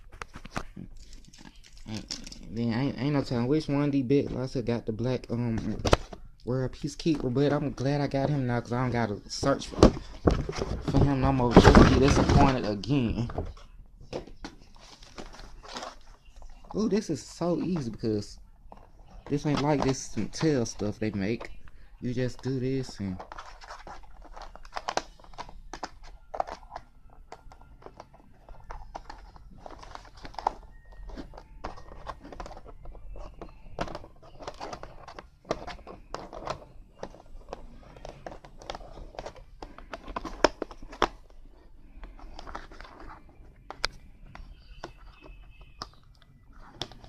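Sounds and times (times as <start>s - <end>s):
plastic and cardboard crinkling: 0.0s - 4.5s, 5.4s - 47.0s.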